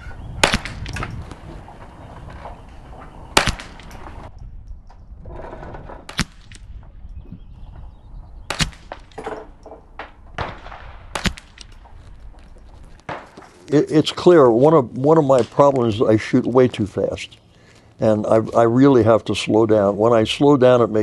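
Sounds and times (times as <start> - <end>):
rifle shots cracking: 0.4 - 1.1, 3.3 - 4.2, 8.5 - 9.2, 10.0 - 12.0, 13.0 - 13.5.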